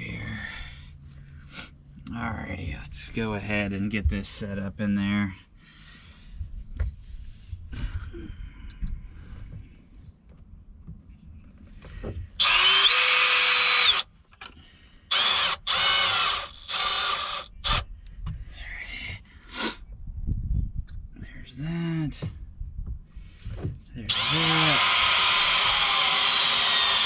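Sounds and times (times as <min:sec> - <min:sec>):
power drill driving screws: 0:12.4 - 0:14.1, 0:15.1 - 0:17.8, 0:24.1 - 0:27.0.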